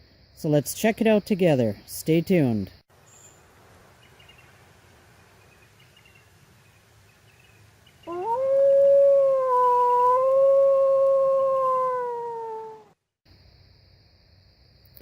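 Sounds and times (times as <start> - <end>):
dog howling: 8.1 - 13.0.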